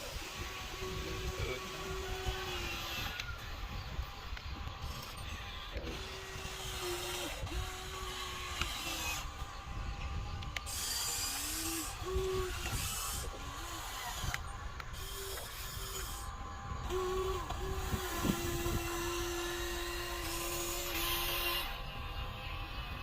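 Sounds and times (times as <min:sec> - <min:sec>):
small electric motors whining: 0:00.0 - 0:23.0.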